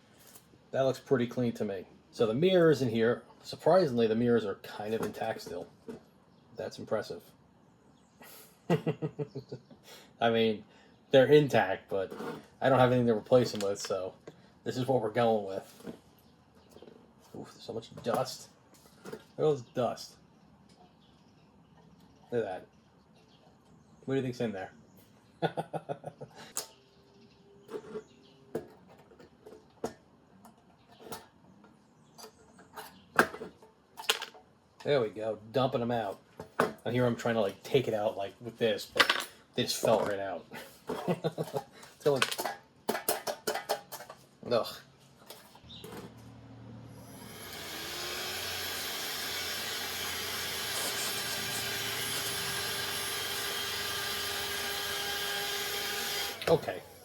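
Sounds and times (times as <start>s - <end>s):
rotary tool motor whine: 46.9s - 57.0s.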